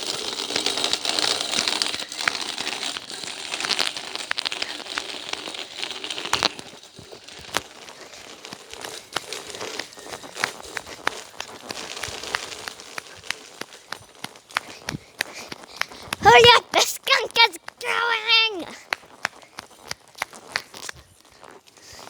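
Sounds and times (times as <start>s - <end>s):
footsteps running on crunchy ground: 6.4s - 22.0s.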